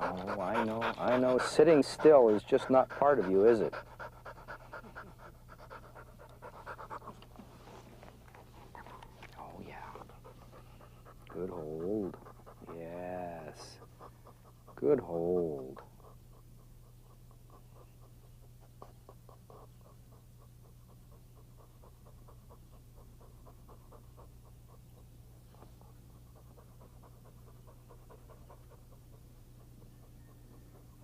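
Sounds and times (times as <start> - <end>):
dog panting: 0.0 - 31.0
steady low hum: 0.0 - 31.0.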